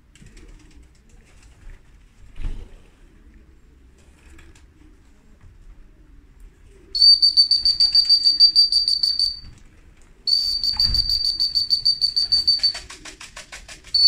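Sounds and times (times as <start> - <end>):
trilling whistle blasts: 7.0 - 9.5, 10.3 - 12.8.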